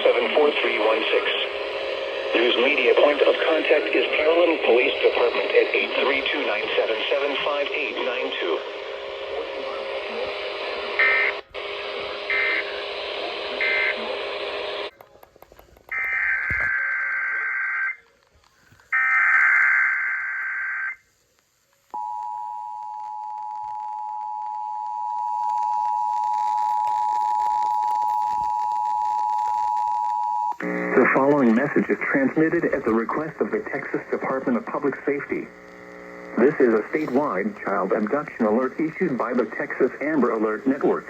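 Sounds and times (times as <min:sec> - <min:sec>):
noisy radio audio: 0:00.0 - 0:22.0, 0:30.5 - 0:41.0.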